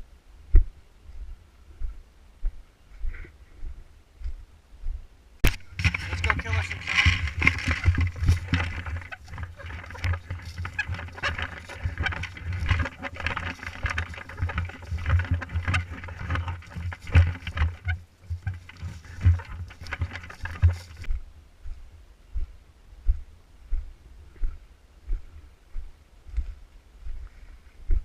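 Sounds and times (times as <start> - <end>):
footsteps thumping and knocking: 5.4 - 21.1.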